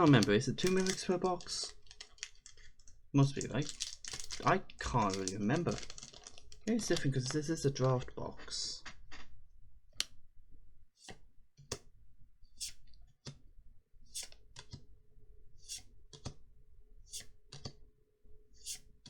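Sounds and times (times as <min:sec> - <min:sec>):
trading cards being flipped: 0:00.0 - 0:02.8, 0:03.4 - 0:07.5, 0:14.2 - 0:14.8.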